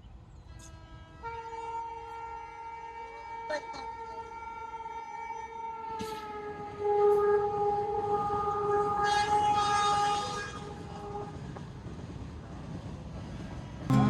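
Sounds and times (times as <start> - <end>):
low rumble of train: 0.0 - 14.0
train horn blowing: 0.5 - 11.5.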